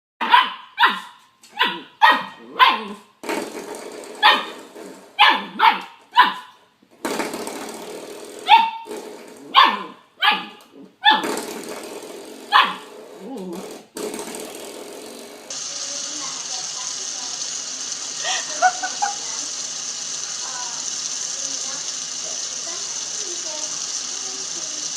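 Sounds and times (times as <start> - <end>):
dog barking: 0.2 - 3.1, 4.2 - 4.6, 5.2 - 6.6, 8.5 - 8.9, 9.5 - 11.3, 12.5 - 12.9.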